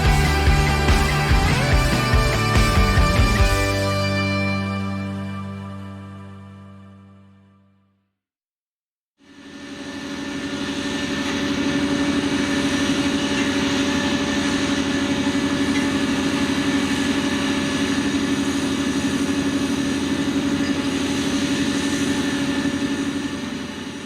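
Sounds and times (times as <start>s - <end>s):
diesel engine humming: 0.0s - 4.8s.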